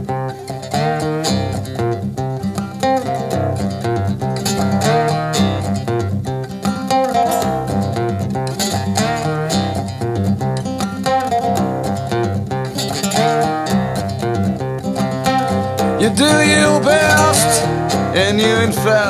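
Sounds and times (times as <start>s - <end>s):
slide blues acoustic guitar: 0.0s - 19.0s.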